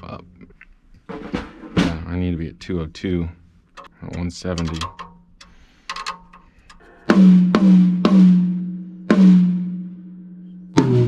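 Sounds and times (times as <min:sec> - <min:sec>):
tom drum hits ringing: 0:07.1 - 0:08.5
larger tom drum hit: 0:07.1 - 0:09.7.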